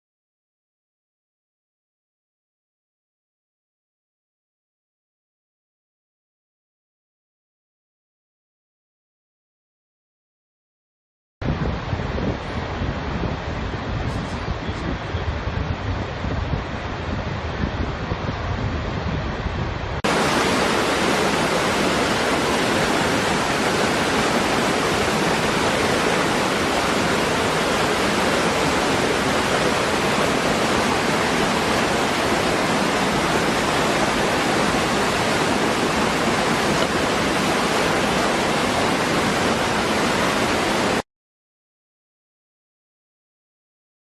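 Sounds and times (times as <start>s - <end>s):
waterfall rushing: 20.0s - 41.0s.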